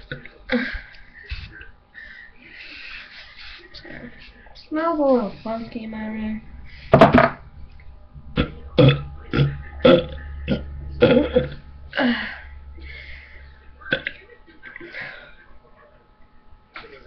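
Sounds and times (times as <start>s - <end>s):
person burping: 8.4s - 12.5s, 13.9s - 14.2s.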